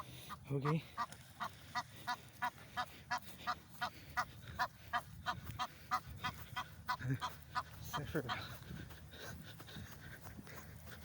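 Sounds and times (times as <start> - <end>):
geese honking: 0.0 - 8.6.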